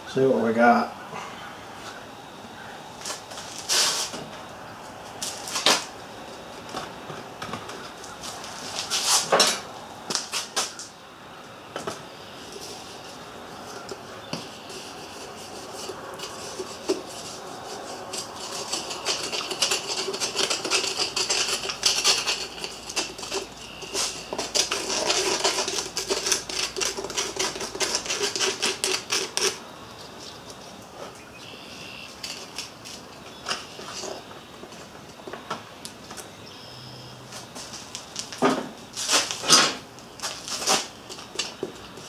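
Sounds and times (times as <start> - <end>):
metal tools clinking and scraping: 14.6 - 29.6, 38.4 - 41.5.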